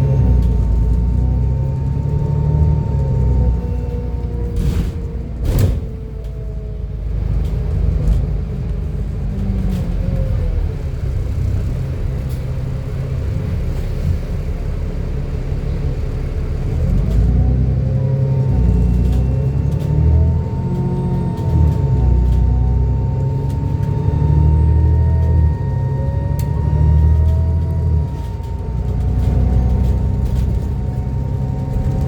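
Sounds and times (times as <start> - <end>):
bus diesel engine running: 0.0 - 32.0
turbocharger whine: 14.4 - 32.0.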